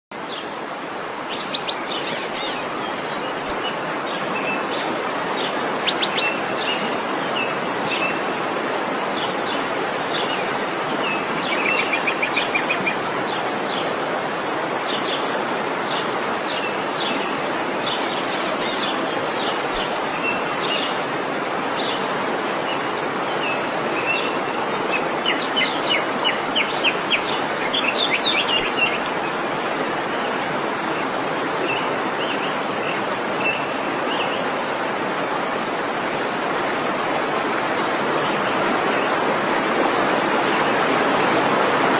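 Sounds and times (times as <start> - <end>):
waterfall rushing: 0.2 - 41.9.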